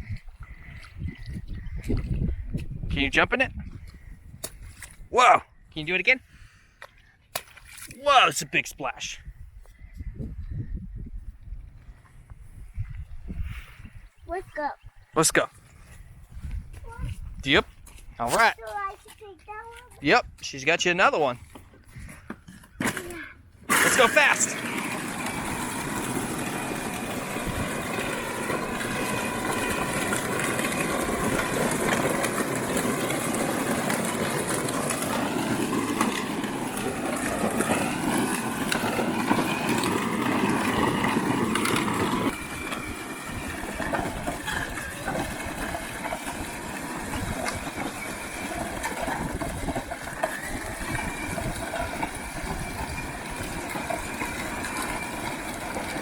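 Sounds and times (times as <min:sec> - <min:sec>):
wheels rolling on ground: 0:00.0 - 0:56.0
toy tractor motor whine: 0:23.7 - 0:56.0.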